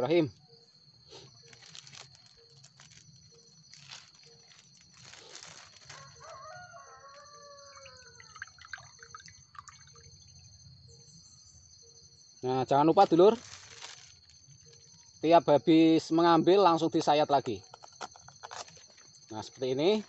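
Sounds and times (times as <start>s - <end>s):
sap dripping into a glass: 7.1s - 10.3s.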